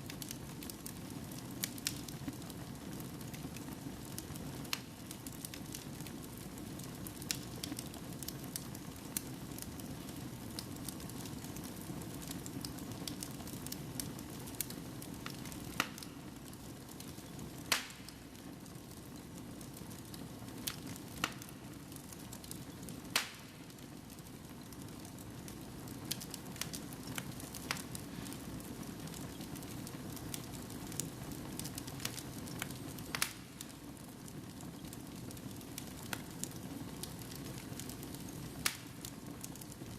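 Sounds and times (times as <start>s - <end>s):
logs crackling and popping: 0.0s - 39.9s
low rush of flame: 23.0s - 34.6s.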